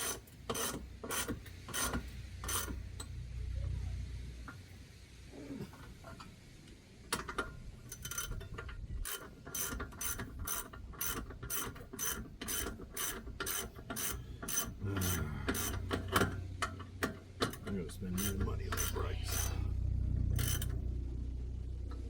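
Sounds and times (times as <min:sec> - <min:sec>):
ratchet wrench clicking: 0:00.0 - 0:02.8, 0:07.9 - 0:08.4, 0:09.0 - 0:19.5, 0:20.4 - 0:20.8.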